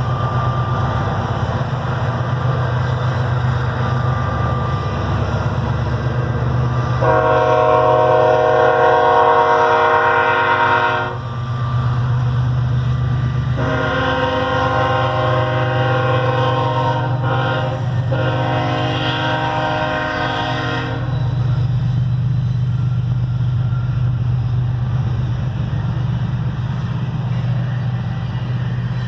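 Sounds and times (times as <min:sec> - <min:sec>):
diesel locomotive engine rumble: 0:00.0 - 0:29.0
train horn blasts: 0:07.0 - 0:11.4, 0:13.5 - 0:21.5.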